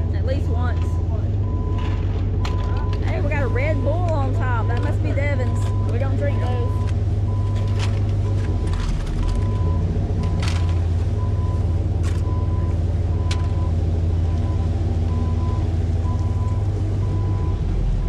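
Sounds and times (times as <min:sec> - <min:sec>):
backup alarm beeping: 0:00.0 - 0:17.7
diesel machinery rumbling: 0:00.0 - 0:18.0.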